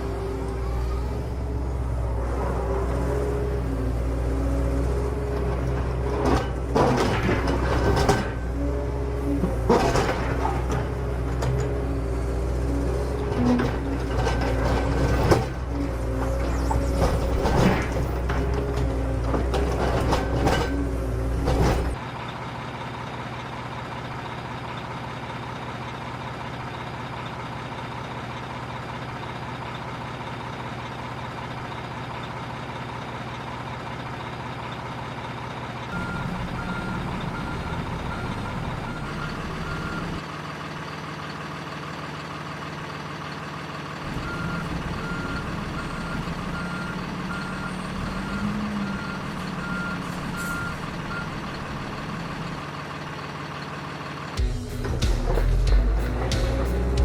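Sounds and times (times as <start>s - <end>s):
reversing beeper: 35.9s - 40.2s, 44.1s - 51.6s.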